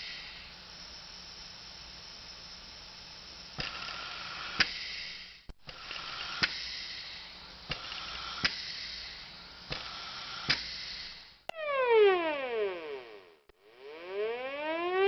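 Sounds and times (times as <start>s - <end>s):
respirator air hiss: 0.0s - 11.5s.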